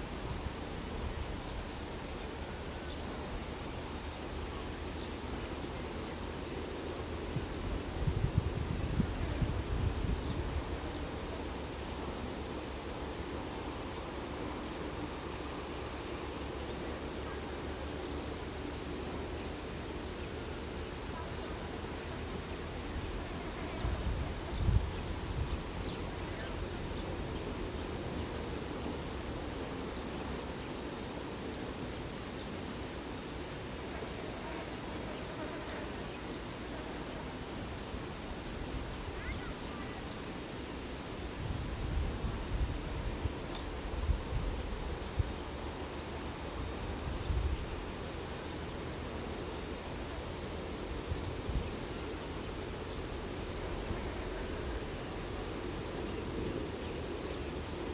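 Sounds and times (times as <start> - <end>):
cricket chirping: 0.0 - 57.9
wind rumble on microphone: 7.0 - 11.3, 22.8 - 28.1, 41.1 - 49.0, 50.8 - 57.9.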